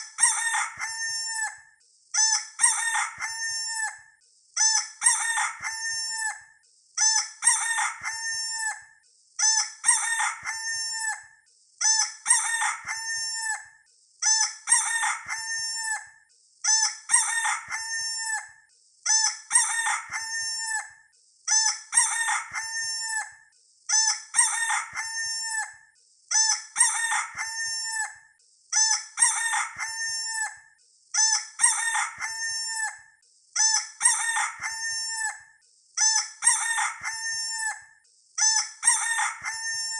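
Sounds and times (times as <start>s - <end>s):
rooster crowing: 0.2s - 1.6s, 2.6s - 4.0s, 5.1s - 6.4s, 7.4s - 8.8s, 9.9s - 11.3s, 12.3s - 13.7s, 14.7s - 16.1s, 17.1s - 18.6s, 19.5s - 21.0s, 21.9s - 23.4s, 24.4s - 25.8s, 26.8s - 28.2s, 29.2s - 30.6s, 31.6s - 33.0s, 34.0s - 35.4s, 36.4s - 37.8s, 38.8s - 39.9s.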